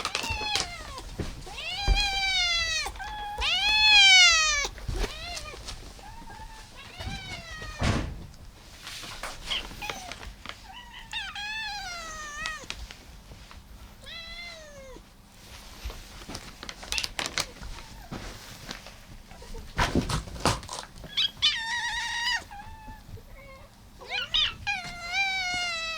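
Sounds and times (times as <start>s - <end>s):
cats meowing: 0.0s - 8.4s, 9.4s - 12.9s, 13.9s - 15.1s, 21.0s - 25.9s.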